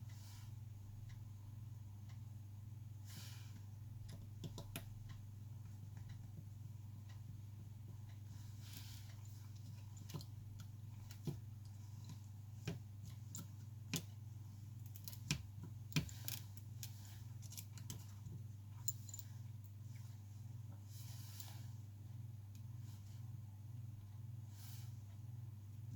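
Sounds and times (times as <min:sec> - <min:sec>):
low electrical hum: 0:00.0 - 0:25.9
tools clicking on phone parts: 0:14.8 - 0:18.2.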